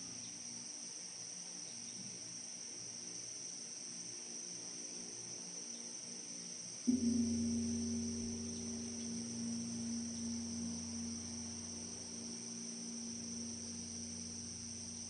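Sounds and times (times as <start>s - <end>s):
large bronze temple bell ringing: 6.9s - 15.0s.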